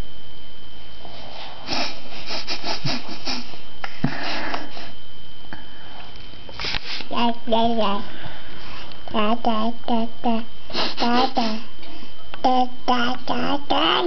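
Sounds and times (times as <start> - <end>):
baby sniffing through the nose: 1.1 - 4.9, 6.6 - 7.1, 10.7 - 11.5.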